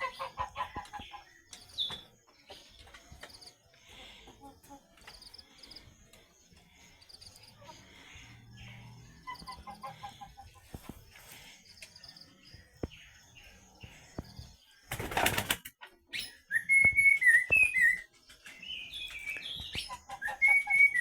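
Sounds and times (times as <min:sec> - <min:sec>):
chicken chirps and peeps: 0:00.0 - 0:05.9, 0:07.0 - 0:12.2, 0:14.2 - 0:21.0
wing-flapping: 0:14.9 - 0:15.7.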